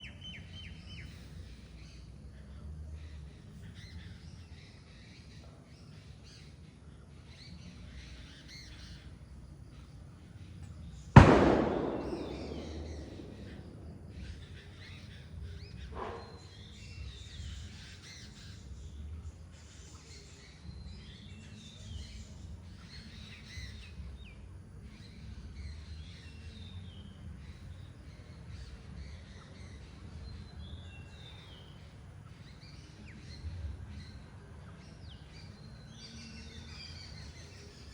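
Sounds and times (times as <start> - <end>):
birds chirping: 9.9 - 18.3
sudden loud bang: 11.2 - 14.6
low steady rumble: 11.2 - 14.8.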